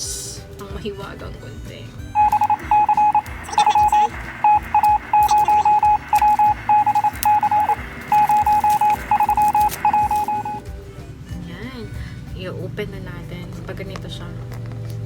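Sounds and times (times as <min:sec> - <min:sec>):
rapid electronic beeps: 0:02.2 - 0:10.6.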